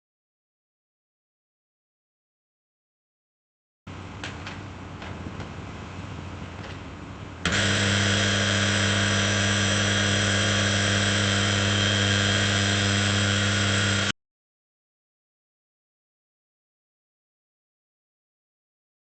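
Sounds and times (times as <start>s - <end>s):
electric drill whining: 7.4s - 14.2s.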